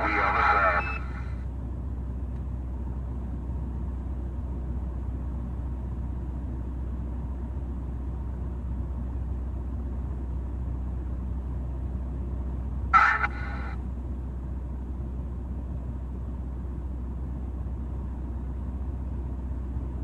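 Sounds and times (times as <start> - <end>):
radio static hum and hiss: 0.0 - 1.4, 12.9 - 13.8.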